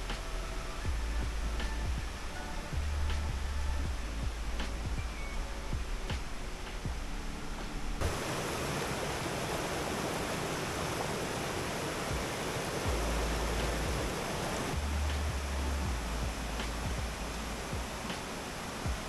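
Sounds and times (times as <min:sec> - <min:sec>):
background music: 0:00.0 - 0:08.2, 0:11.9 - 0:19.0
waterfall rushing and splashing: 0:08.0 - 0:19.0.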